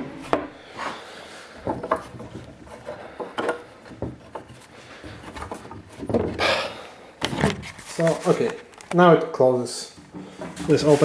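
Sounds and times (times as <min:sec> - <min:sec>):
wood rubbing on wood: 0:00.3 - 0:08.6, 0:09.9 - 0:11.0
wooden knocks and clicks: 0:01.6 - 0:06.4.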